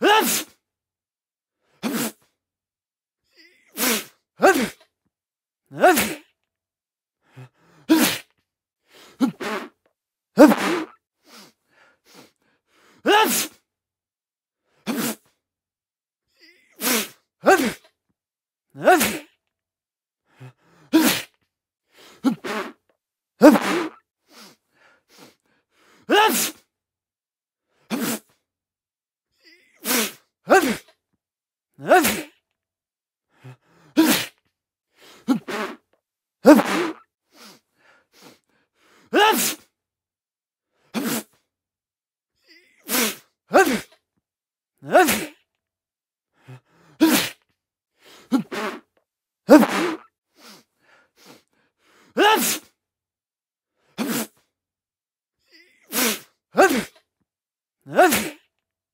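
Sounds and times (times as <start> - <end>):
man sneezing: 0.0 - 0.6, 1.7 - 2.3, 3.4 - 4.9, 5.7 - 6.3, 7.9 - 8.4, 9.1 - 9.8, 10.4 - 11.0, 13.0 - 13.6, 14.8 - 15.4, 16.4 - 18.0, 18.8 - 19.4, 20.8 - 21.4, 22.2 - 22.8, 23.4 - 24.0, 26.1 - 26.7, 27.8 - 28.4, 29.4 - 31.0, 31.8 - 32.4, 33.4 - 34.4, 35.1 - 35.8, 36.4 - 37.6, 39.1 - 39.7, 40.8 - 41.4, 42.5 - 44.0, 44.8 - 45.5, 46.4 - 47.5, 48.1 - 48.9, 49.5 - 50.6, 52.2 - 52.8, 53.9 - 54.5, 55.5 - 57.1, 57.9 - 58.5.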